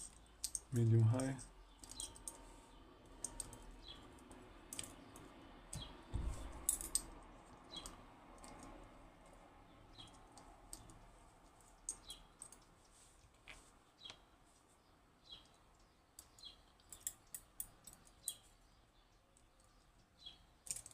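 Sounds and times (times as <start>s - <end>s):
metal lock parts clicking: 1.7s - 2.4s, 20.6s - 20.9s
dull knocks: 6.1s - 6.6s.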